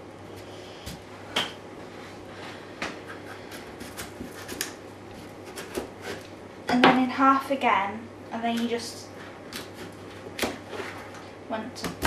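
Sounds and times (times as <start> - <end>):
knife cutting on board: 2.8 - 4.8, 5.4 - 6.3.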